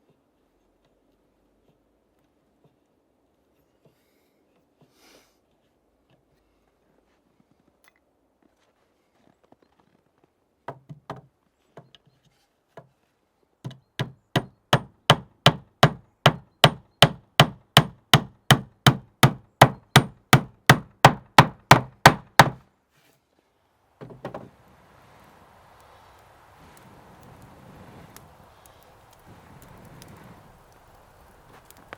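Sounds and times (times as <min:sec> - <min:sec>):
hand tool striking wood: 0:13.7 - 0:22.6.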